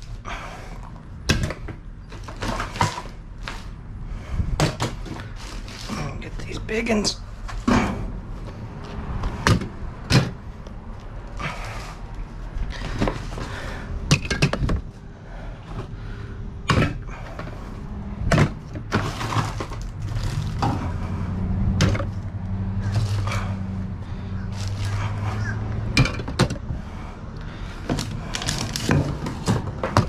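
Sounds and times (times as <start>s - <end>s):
knocks and clanks: 7.5s - 8.2s, 9.2s - 10.4s, 12.7s - 14.9s, 16.6s - 17.6s, 18.2s - 21.0s, 21.7s - 23.6s, 24.5s - 26.7s, 27.8s - 30.0s.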